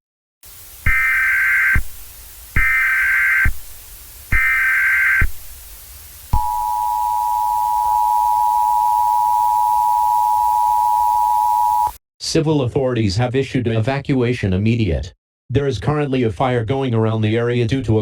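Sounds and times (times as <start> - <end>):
data tone bursts: 0.8 - 2.0, 2.6 - 3.6, 4.3 - 5.4, 6.3 - 12.0
two-tone attention signal: 0.9 - 1.8, 2.6 - 3.5, 4.4 - 5.3, 6.4 - 12.0.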